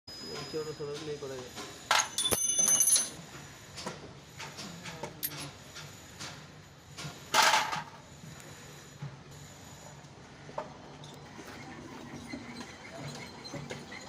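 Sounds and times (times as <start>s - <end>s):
metal tools clinking: 1.9s - 3.2s, 5.2s - 5.5s.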